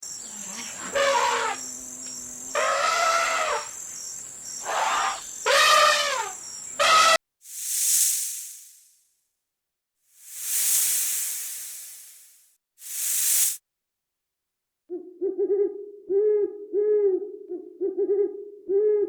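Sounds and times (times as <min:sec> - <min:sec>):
insects chirping: 0:00.0 - 0:08.9
animal calls rising and falling: 0:04.6 - 0:07.2
hiss: 0:07.4 - 0:09.0, 0:10.2 - 0:13.6.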